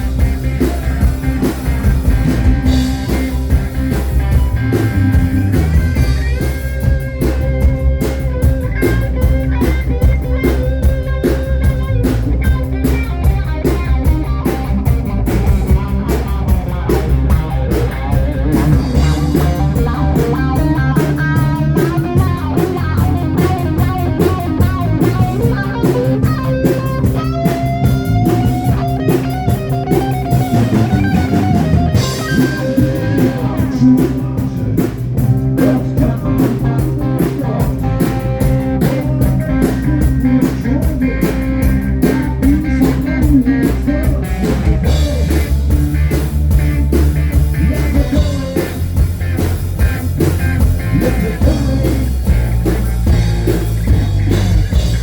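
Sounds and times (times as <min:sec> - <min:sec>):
bass: 0:00.0 - 0:55.0
drum kit: 0:00.0 - 0:55.0
electric guitar lines: 0:00.0 - 0:55.0.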